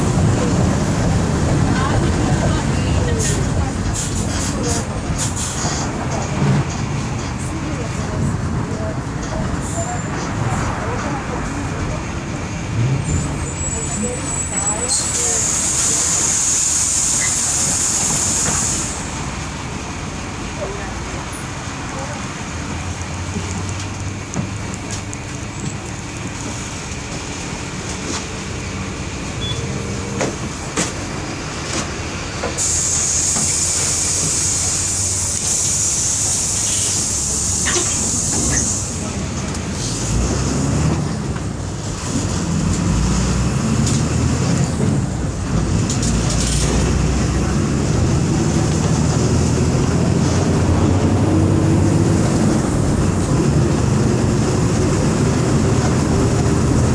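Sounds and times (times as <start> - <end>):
bus diesel engine running: 0.0 - 56.9
air release hiss: 15.2 - 19.1, 32.6 - 39.0.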